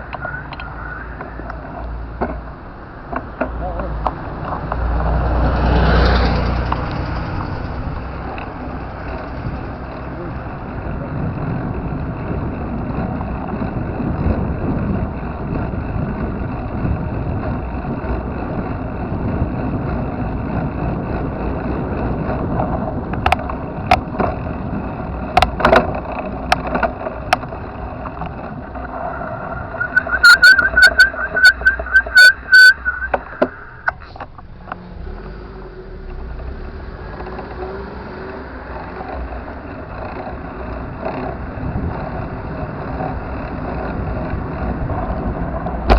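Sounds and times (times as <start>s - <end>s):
bicycle road and wind noise: 0.0s - 45.9s
repeating high tone: 29.2s - 33.9s
sharp clicks: 29.6s - 34.8s.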